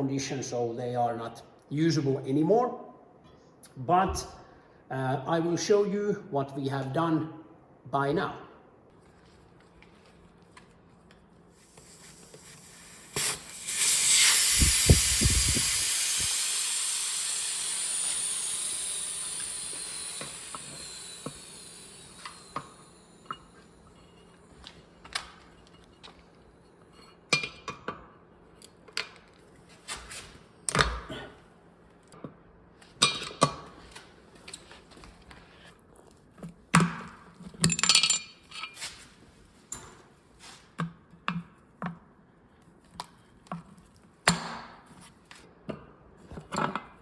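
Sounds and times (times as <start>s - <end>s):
air hissing out of tyre: 11.5s - 24.5s.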